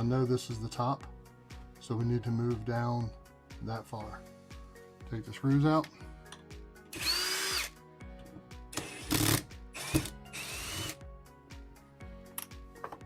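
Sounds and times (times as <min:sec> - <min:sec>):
power drill motor whine: 0:06.9 - 0:07.7, 0:08.8 - 0:11.0.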